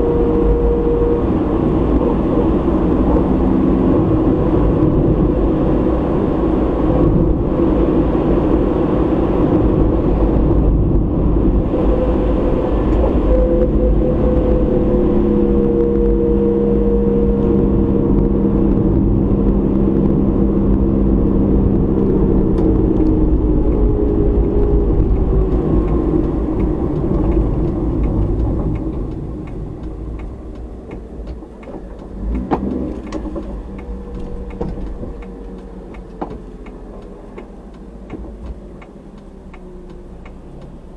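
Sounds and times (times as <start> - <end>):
car engine and road noise: 0.0 - 40.9
faint regular ticking: 25.1 - 40.9.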